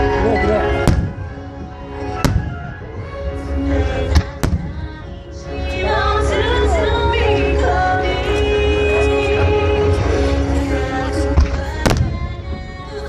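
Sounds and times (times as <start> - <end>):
loud music: 0.0 - 13.0
fireworks bangs: 0.7 - 5.2
person singing: 3.0 - 13.0.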